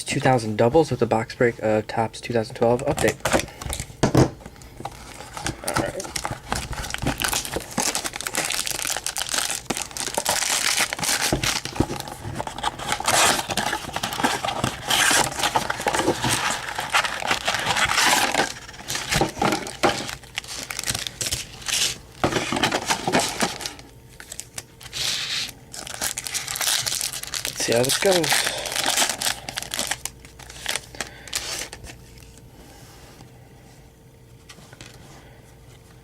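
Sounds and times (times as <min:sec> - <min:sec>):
plastic wrapping crinkling and tearing: 0:04.9 - 0:32.3.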